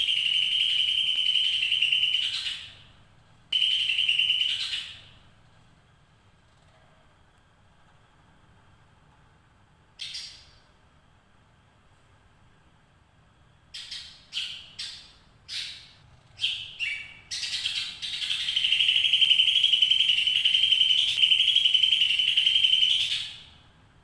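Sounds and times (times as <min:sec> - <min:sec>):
bird calling: 0:00.0 - 0:02.8, 0:03.6 - 0:05.1, 0:13.8 - 0:23.5.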